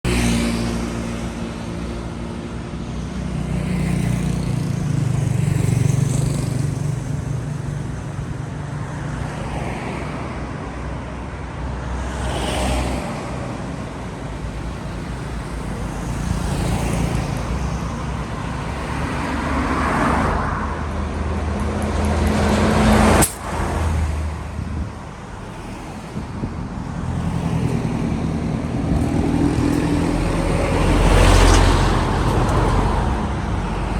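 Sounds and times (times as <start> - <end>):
cars passing by: 0.1 - 33.9
vehicle engine humming: 13.8 - 33.9
sharp click: 23.2 - 23.6.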